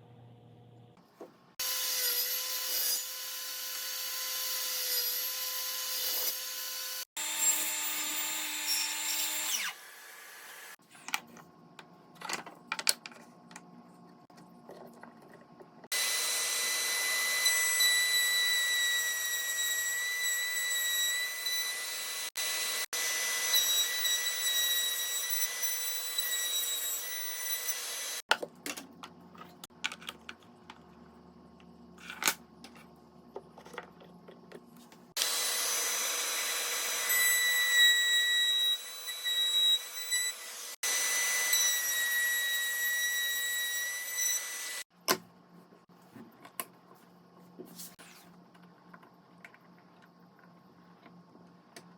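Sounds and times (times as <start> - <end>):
power tool high-pitched whine: 15.9 - 28.2, 35.2 - 42.6.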